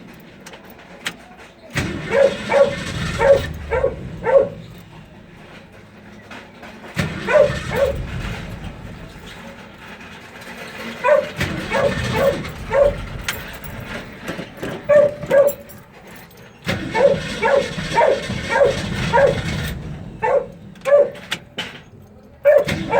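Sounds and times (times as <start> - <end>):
car engine cranking: 0.0 - 22.9
dog barking: 1.8 - 4.9, 7.0 - 8.6, 10.9 - 13.7, 14.9 - 15.8, 16.7 - 21.4, 22.4 - 22.9.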